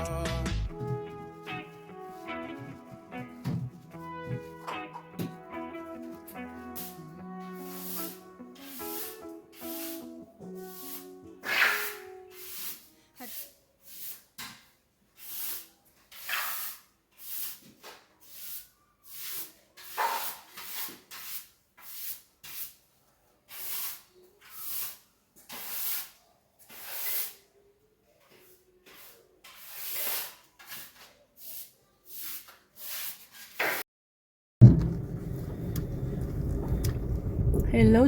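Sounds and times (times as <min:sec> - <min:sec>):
hand rubbing strokes: 0:06.6 - 0:14.2.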